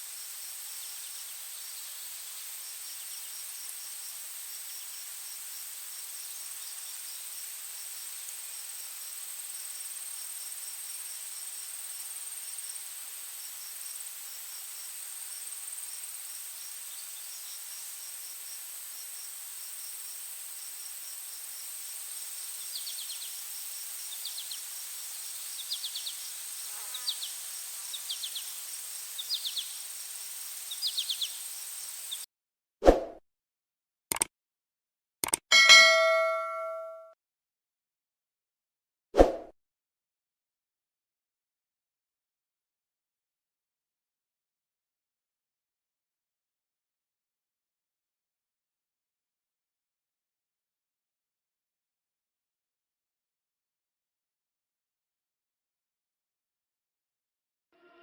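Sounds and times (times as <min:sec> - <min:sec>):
insect chorus drone: 0:00.0 - 0:32.2.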